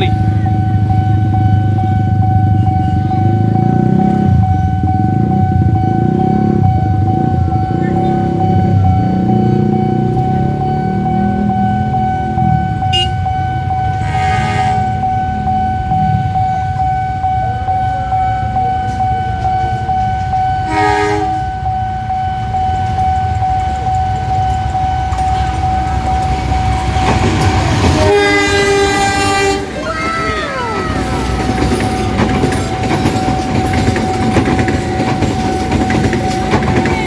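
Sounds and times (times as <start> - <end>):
steady high tone: 0.0 - 37.0
train horn blasts: 12.5 - 15.1, 20.6 - 21.6, 27.5 - 29.8
train wheels clattering over rails: 22.5 - 37.0.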